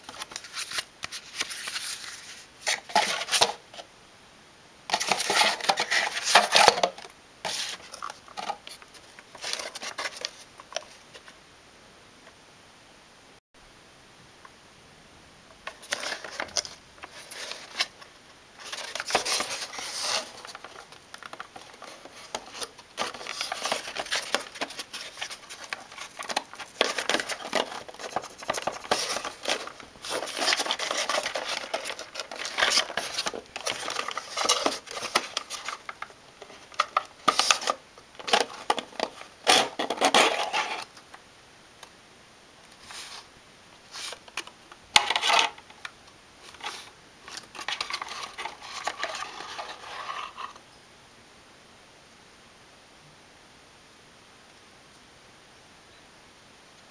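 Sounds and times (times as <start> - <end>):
hands handling hardware packaging: 0.0 - 3.9, 4.9 - 11.4, 15.6 - 41.1, 43.9 - 50.6.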